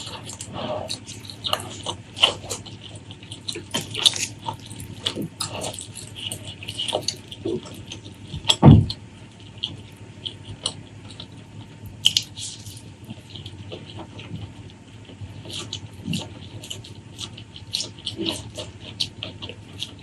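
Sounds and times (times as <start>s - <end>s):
wet chewing and smacking: 0.0s - 20.0s
low thud: 8.6s - 9.0s.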